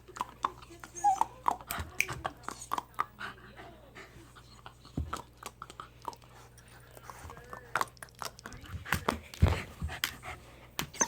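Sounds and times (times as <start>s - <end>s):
dog panting: 0.1s - 7.5s, 8.5s - 11.0s.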